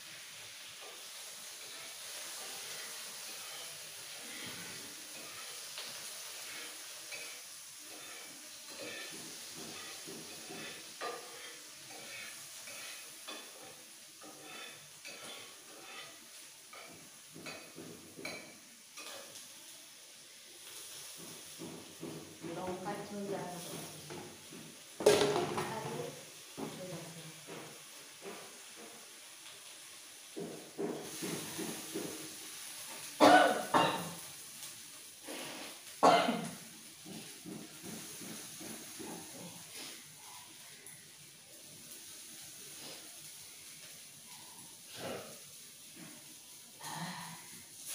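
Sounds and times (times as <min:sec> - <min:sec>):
food sizzling in a pan: 0:00.0 - 0:47.9
spatula scraping a pan: 0:00.2 - 0:19.5, 0:35.2 - 0:35.9, 0:37.0 - 0:40.9
spatula clacking on pan: 0:00.7 - 0:19.4, 0:20.7 - 0:22.6, 0:30.3 - 0:32.8, 0:37.0 - 0:39.6
breathy sounds: 0:46.8 - 0:47.6.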